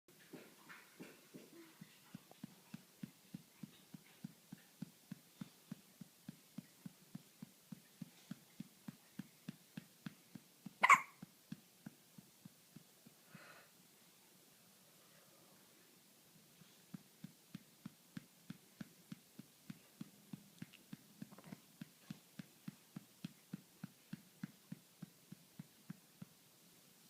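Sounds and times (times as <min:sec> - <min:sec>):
rapid hiccups: 0:10.8 - 0:11.2.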